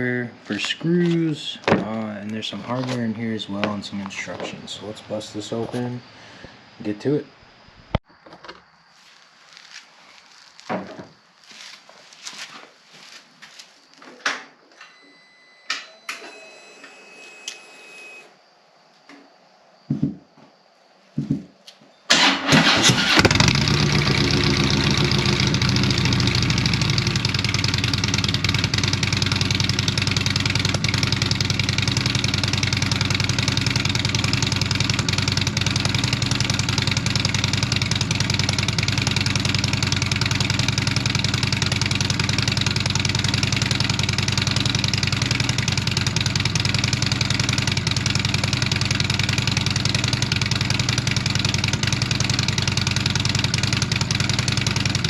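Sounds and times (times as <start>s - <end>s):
motorcycle engine idling: 22.2s - 55.0s.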